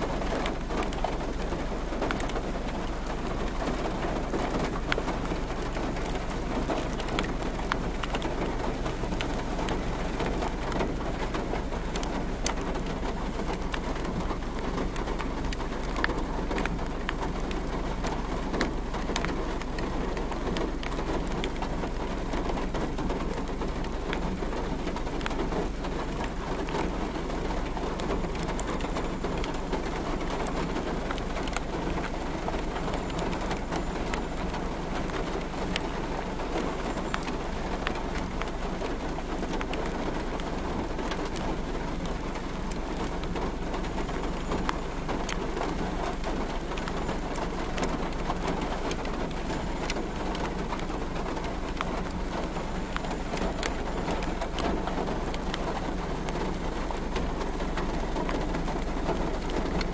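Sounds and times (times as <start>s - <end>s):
rain on hard surface: 0.0s - 59.9s.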